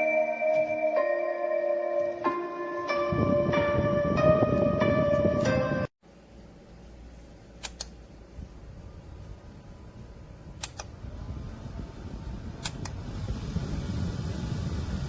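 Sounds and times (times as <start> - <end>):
portable fan whirring: 6.3 - 15.0
sharp double clicks: 10.6 - 10.9.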